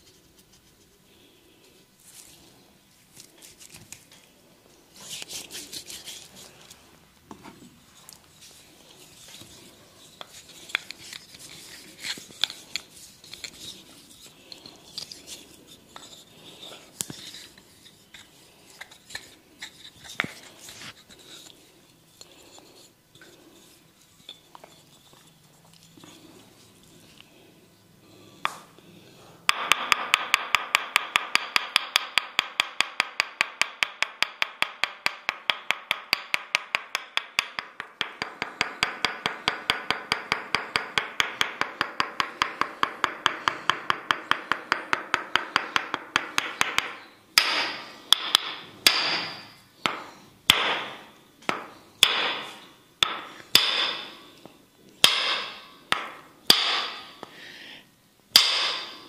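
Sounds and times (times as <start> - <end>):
wooden mallet tapping wooden wedge: 29.5 - 49.2, 51.5 - 54.1.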